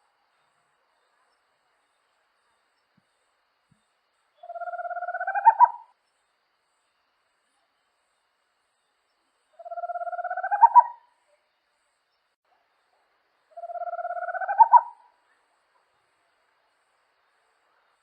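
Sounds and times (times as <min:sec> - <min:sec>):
owl purring trill: 0:04.4 - 0:05.9, 0:09.6 - 0:11.0, 0:13.6 - 0:15.1.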